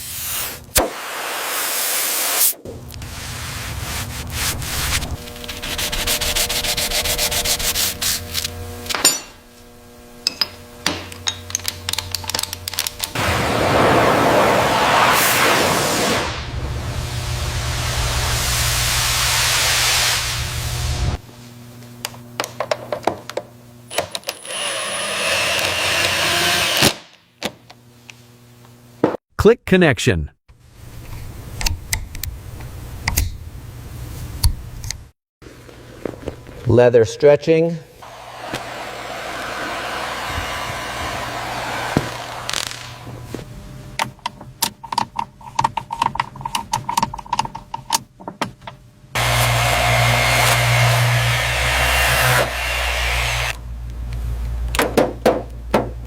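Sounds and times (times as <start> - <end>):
hissing whir: 12.5 - 20.6, 38.0 - 43.3
loud machine humming: 38.0 - 43.2, 49.2 - 53.7.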